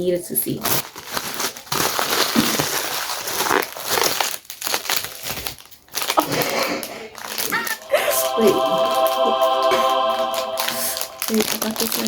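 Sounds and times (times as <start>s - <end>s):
packaging crinkling: 0.6s - 7.8s, 11.2s - 12.0s.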